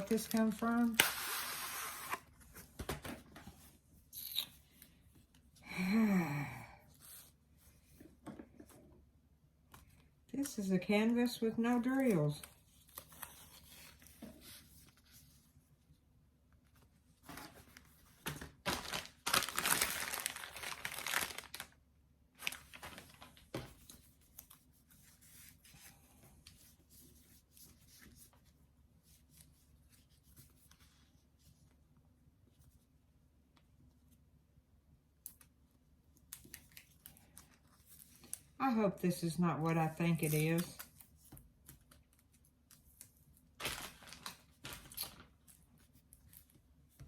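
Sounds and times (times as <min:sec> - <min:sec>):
package crinkling: 0:18.6 - 0:21.8, 0:22.4 - 0:23.4, 0:43.6 - 0:45.6
packaging tearing: 0:18.7 - 0:21.8.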